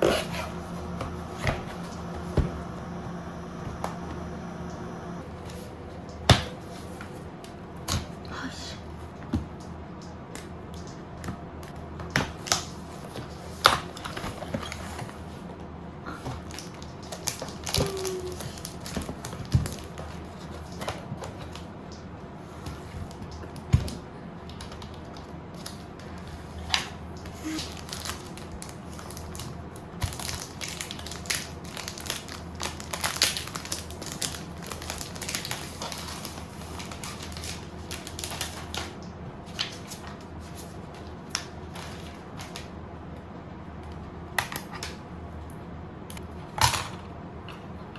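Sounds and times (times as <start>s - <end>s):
packaging crinkling: 16.4s - 20.8s, 27.4s - 38.9s.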